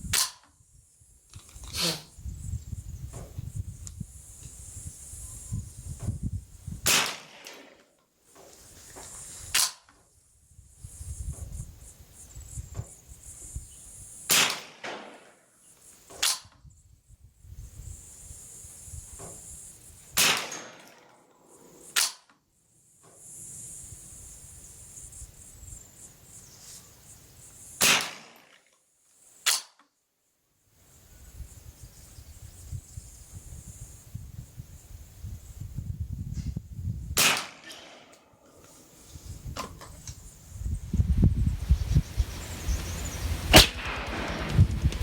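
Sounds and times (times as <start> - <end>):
rifle shots: 6.9 - 7.8, 14.3 - 15.4, 20.2 - 21.1, 27.8 - 28.5, 37.2 - 38.2, 43.5 - 45.0
steady high hiss: 38.2 - 45.0.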